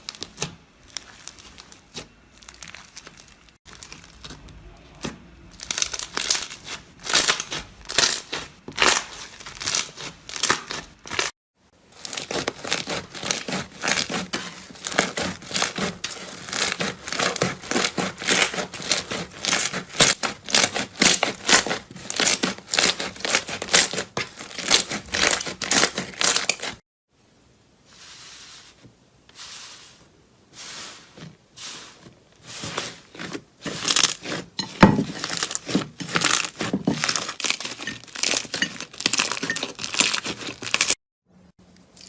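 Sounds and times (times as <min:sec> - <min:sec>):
slime crackling and popping: 0:00.0 - 0:11.3, 0:12.0 - 0:26.8, 0:33.1 - 0:34.4, 0:35.1 - 0:41.0.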